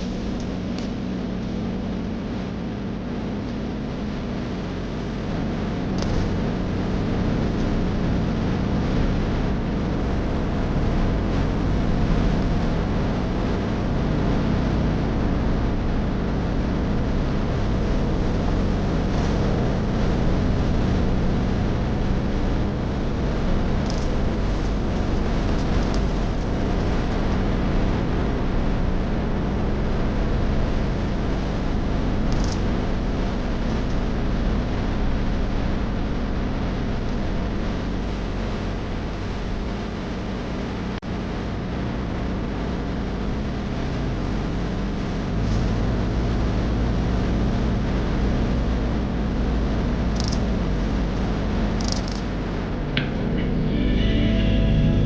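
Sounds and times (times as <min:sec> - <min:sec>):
car engine running: 0:00.0 - 0:36.1.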